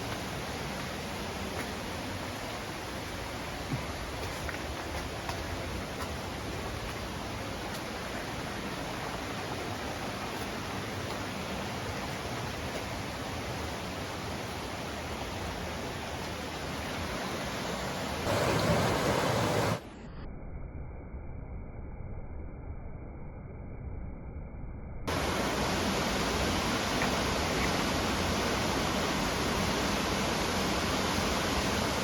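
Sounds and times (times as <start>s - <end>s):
waterfall rushing: 0.0s - 19.8s, 25.1s - 32.0s.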